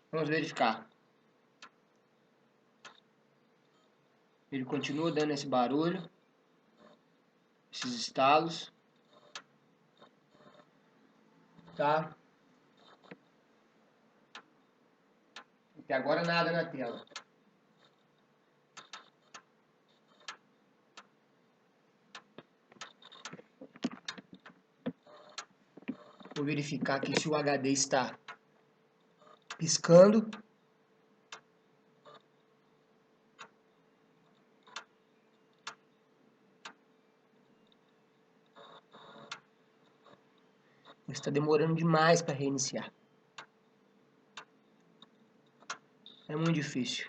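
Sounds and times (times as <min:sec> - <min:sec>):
hard drive clicking: 0:16.2 - 0:21.2, 0:22.1 - 0:27.4.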